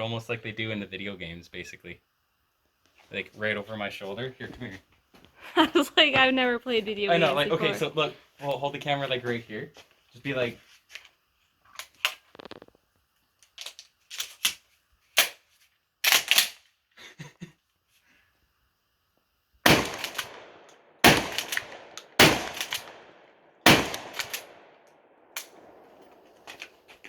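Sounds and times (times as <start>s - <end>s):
shotgun shots with echo: 19.7s - 24.8s.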